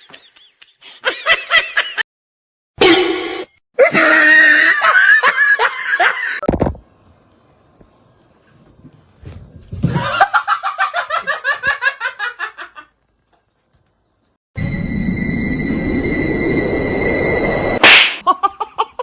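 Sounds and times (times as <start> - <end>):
person laughing hard: 0.0 - 2.0, 3.8 - 6.5, 9.9 - 12.8, 18.2 - 19.0.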